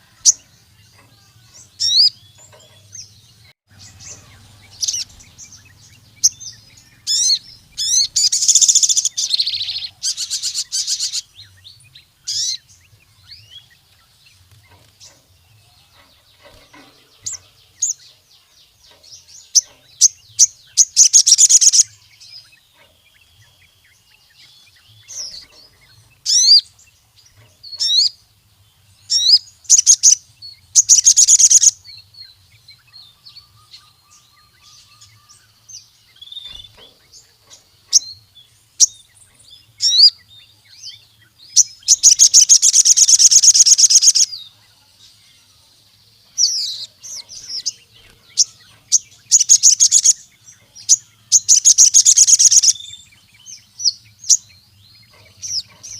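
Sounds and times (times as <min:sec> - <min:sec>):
bird rattling trills: 0:00.0 - 0:11.4, 0:13.5 - 0:23.8, 0:29.1 - 0:31.8, 0:41.5 - 0:44.4, 0:46.4 - 0:53.0
bird singing: 0:00.0 - 0:55.9.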